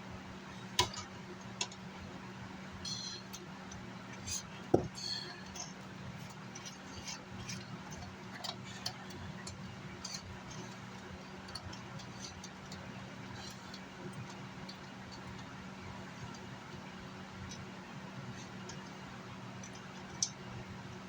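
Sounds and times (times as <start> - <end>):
steady low hum: 0.0 - 21.0.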